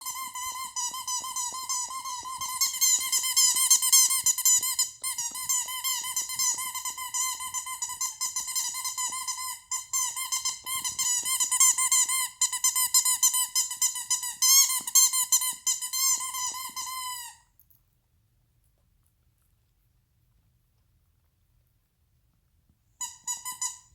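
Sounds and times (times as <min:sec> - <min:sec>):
squeaky toy squeaking: 0:00.0 - 0:17.4, 0:23.0 - 0:23.9.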